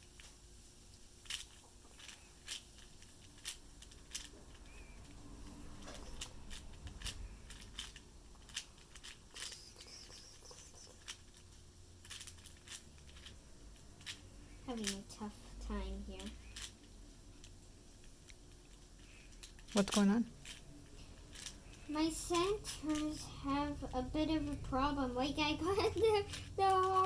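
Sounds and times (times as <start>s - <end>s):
puzzle cube plastic clicks: 5.8s - 13.4s, 14.0s - 15.1s, 18.2s - 20.6s.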